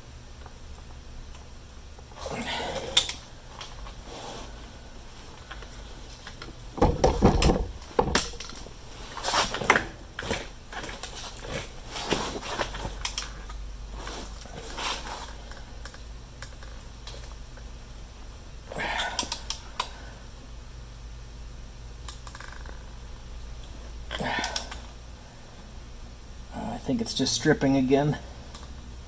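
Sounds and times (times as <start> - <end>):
heavier metal knocks: 6.8 - 8.4.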